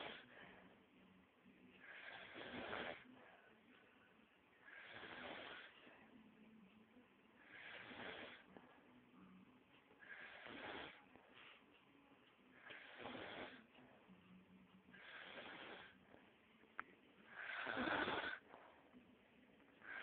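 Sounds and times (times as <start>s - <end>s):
person snoring: 0.0s - 0.5s, 1.8s - 3.2s, 4.6s - 5.8s, 7.4s - 8.6s, 10.0s - 11.1s, 12.6s - 13.7s, 15.0s - 16.0s, 17.3s - 18.7s.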